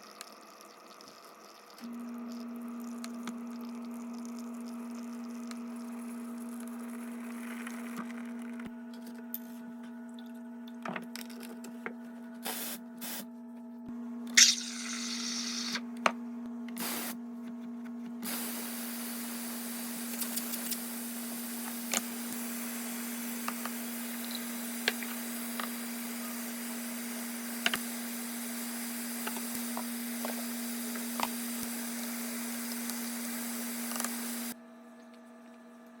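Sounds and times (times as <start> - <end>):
espresso machine hum: 1.2 - 8.7, 14.4 - 15.8, 18.2 - 34.6
spraying hiss: 16.8 - 17.2, 18.2 - 34.6.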